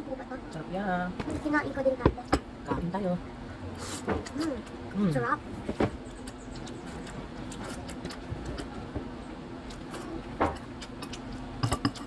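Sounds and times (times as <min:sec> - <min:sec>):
steady low hum: 0:00.0 - 0:12.0
wet chewing clicks and smacks: 0:06.0 - 0:12.0.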